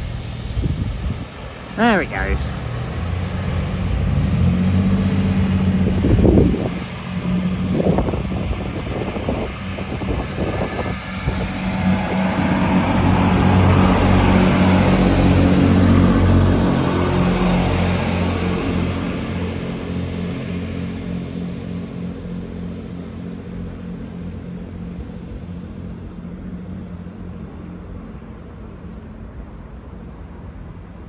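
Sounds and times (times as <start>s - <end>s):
train diesel engines droning: 1.4s - 6.0s.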